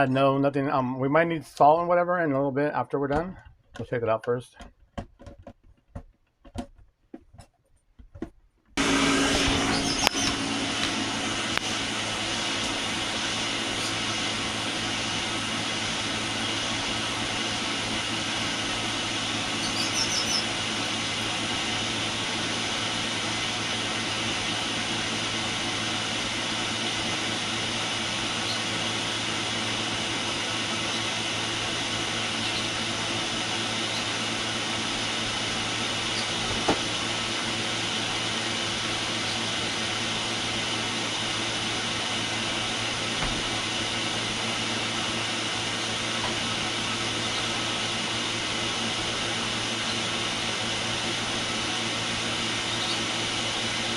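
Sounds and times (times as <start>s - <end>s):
electric motor whir: 8.8s - 53.9s.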